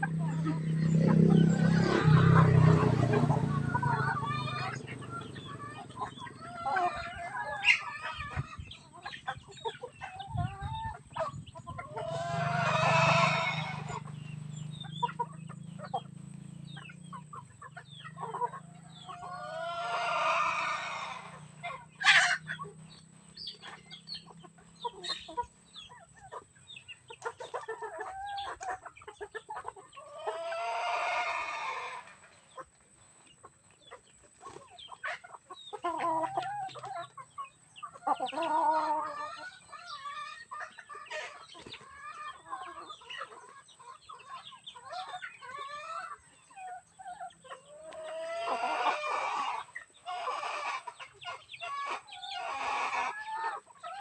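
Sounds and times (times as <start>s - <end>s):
hens clucking: 0.0s - 54.0s
rooster crowing: 12.0s - 14.0s.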